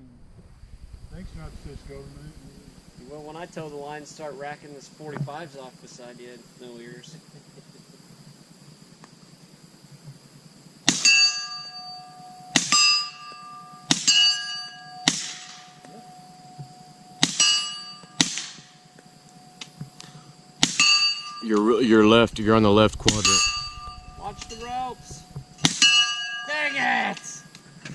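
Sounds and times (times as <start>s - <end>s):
suppressed gunshots: 22.3s - 25.8s
steel target ringing: 23.1s - 27.5s.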